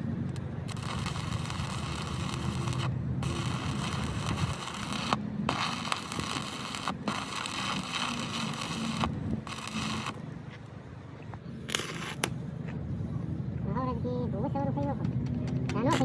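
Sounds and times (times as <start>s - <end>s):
low engine-like hum: 0.0s - 16.0s
arc welding crackling and hissing: 0.6s - 10.2s, 11.7s - 12.3s.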